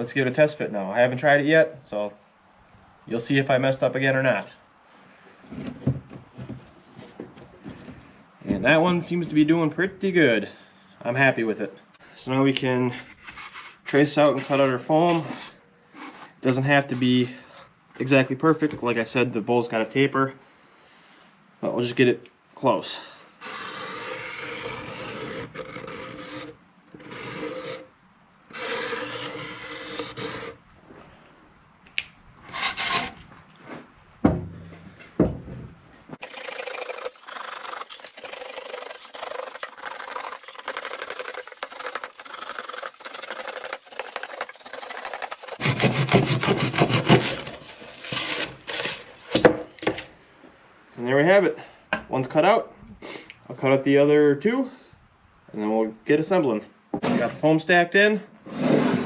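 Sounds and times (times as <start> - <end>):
cutting foam board: 23.4 - 27.9, 28.5 - 30.6, 32.5 - 33.2, 36.2 - 49.5.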